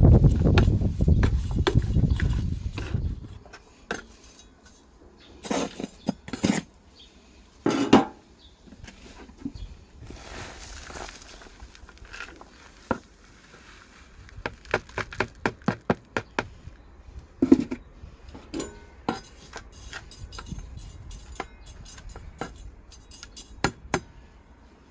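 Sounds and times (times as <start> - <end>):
low rustling scrape: 8.9 - 14.2.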